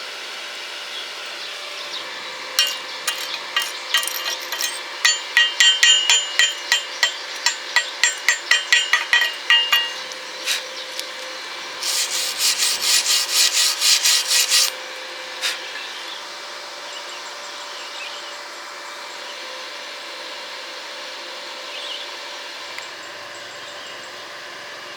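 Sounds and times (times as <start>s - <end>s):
harsh scraping strokes: 2.6s - 10.6s, 11.8s - 14.7s
hammer chipping steel: 2.6s - 10.7s, 11.8s - 14.8s.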